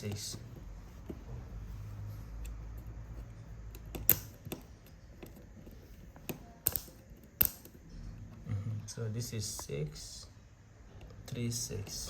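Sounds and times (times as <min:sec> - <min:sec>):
combination lock wheels clicking: 0:03.6 - 0:07.9.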